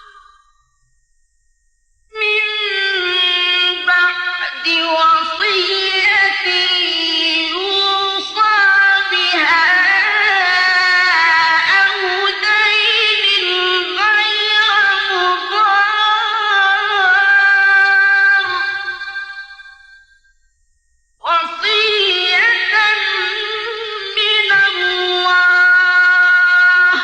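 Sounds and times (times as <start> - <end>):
man chanting melodic recitation: 21.4 - 27.0.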